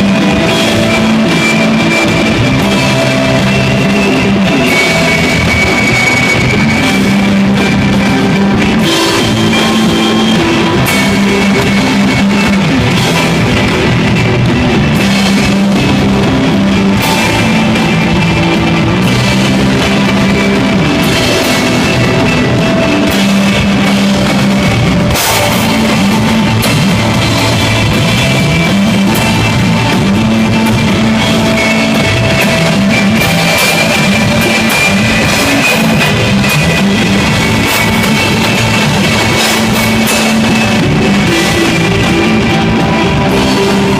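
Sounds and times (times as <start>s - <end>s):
bass guitar: 0.0s - 43.9s
drum kit: 0.0s - 43.9s
electric guitar: 0.0s - 43.9s.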